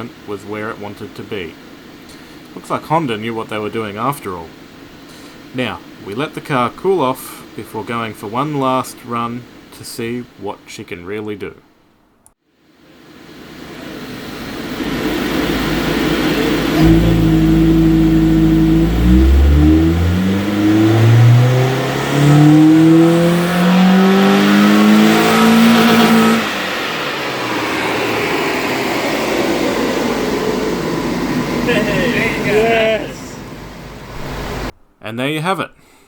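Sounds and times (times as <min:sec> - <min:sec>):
steady rush of noise: 0:12.7 - 0:17.7, 0:24.2 - 0:34.8
car engine revving on dyno: 0:14.7 - 0:31.8.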